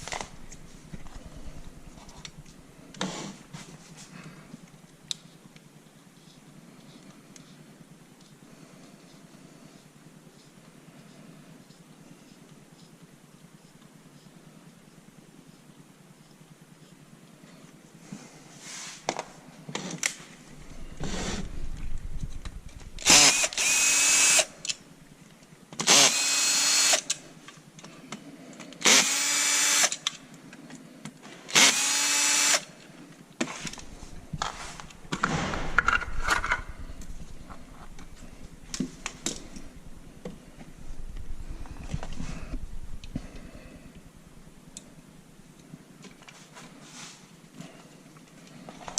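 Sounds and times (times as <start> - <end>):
power drill whining: 23.0 - 24.5, 25.8 - 27.1, 28.8 - 30.0, 31.5 - 32.7.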